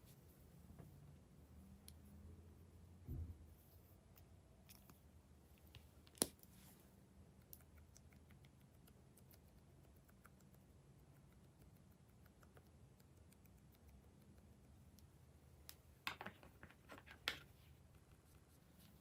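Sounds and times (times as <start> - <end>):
sticky clicks of slime mixing: 7.3 - 15.8.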